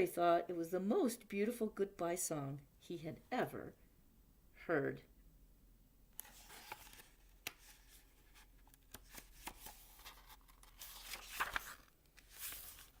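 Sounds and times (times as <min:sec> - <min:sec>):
paper pages rustling: 0:06.2 - 0:13.0.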